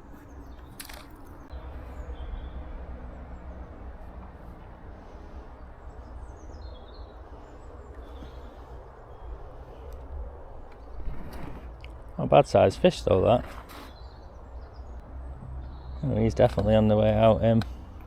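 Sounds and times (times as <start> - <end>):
bird chirps: 0.0 - 4.2, 5.5 - 9.9, 13.7 - 16.3
wind rumble on microphone: 0.0 - 12.2.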